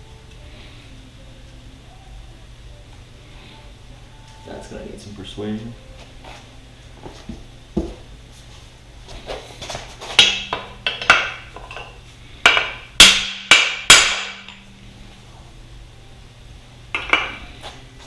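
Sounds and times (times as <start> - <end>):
hammer striking metal: 10.2 - 14.6, 17.0 - 17.4.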